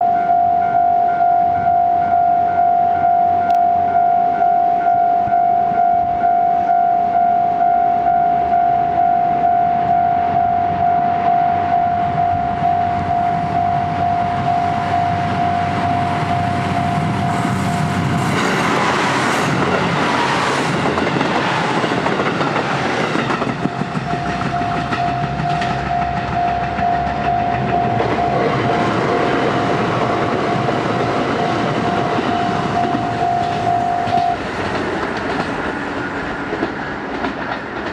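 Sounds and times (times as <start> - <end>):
level crossing warning bell: 0.0 - 17.6, 23.6 - 29.0, 30.6 - 34.4
diesel train passing: 0.0 - 37.9
wheels clattering over rail joints: 15.8 - 37.9.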